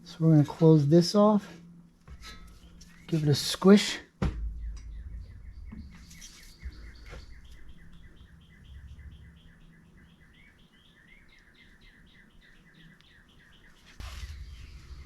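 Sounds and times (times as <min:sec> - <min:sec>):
small bird chirping: 0:04.4 - 0:15.0.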